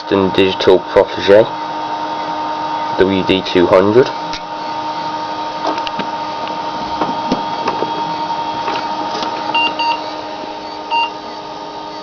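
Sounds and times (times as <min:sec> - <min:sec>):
hard drive whirring: 0:00.0 - 0:12.0
short beeps: 0:09.5 - 0:12.0.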